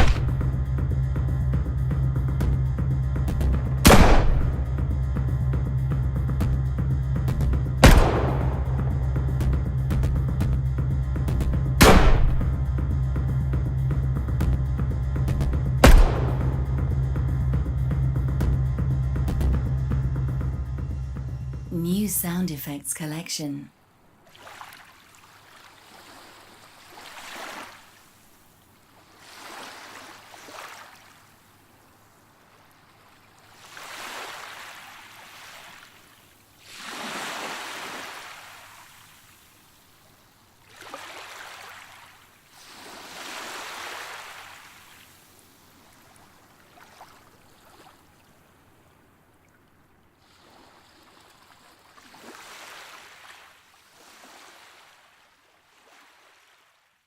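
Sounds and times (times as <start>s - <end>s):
waves washing on shore: 0.0s - 0.6s, 24.2s - 49.1s, 50.2s - 56.8s.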